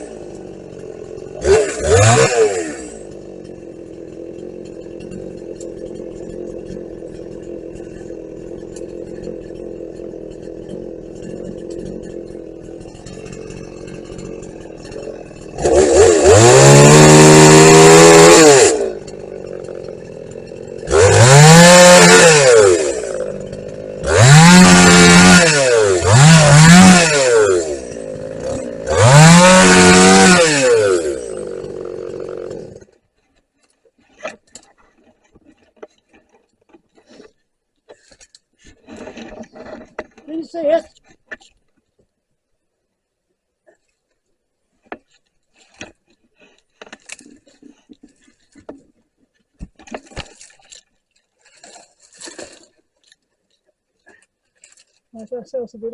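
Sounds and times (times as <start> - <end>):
chainsaw revving at full throttle: 0.0 - 33.0
chainsaw idling: 0.0 - 33.1, 34.0 - 41.4.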